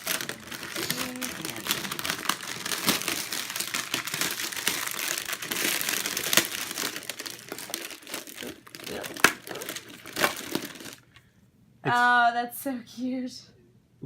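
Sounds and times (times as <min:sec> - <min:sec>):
wrapping paper crinkling: 0:00.0 - 0:11.2.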